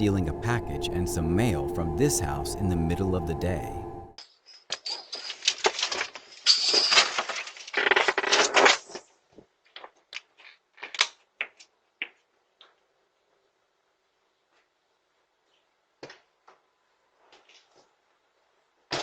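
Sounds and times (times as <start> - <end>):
paper rustling and scraping: 4.8 - 10.9.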